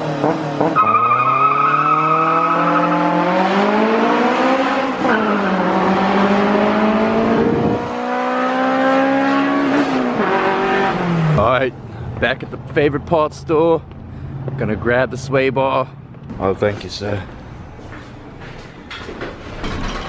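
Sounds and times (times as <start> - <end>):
car engine accelerating: 0.0 - 11.9.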